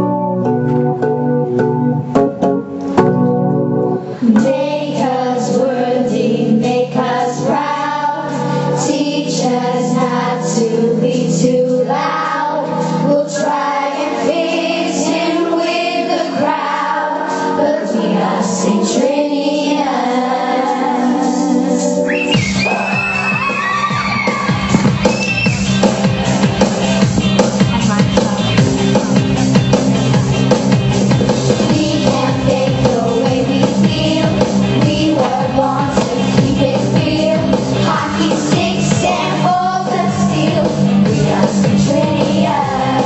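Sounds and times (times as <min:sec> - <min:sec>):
organ-like keyboard chords: 0:00.0 - 0:43.0
choir of young voices singing: 0:04.1 - 0:22.9, 0:31.6 - 0:43.0.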